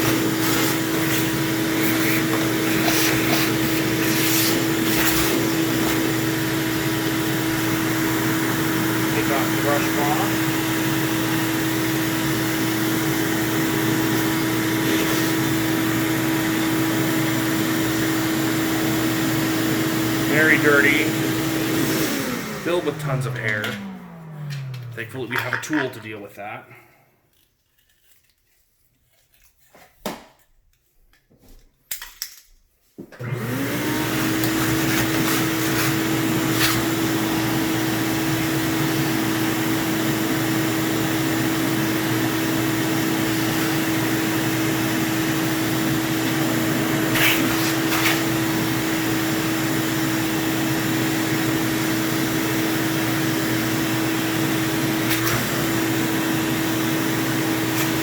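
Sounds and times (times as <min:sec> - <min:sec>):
vacuum cleaner motor whine: 0:00.0 - 0:26.0, 0:33.2 - 0:58.0.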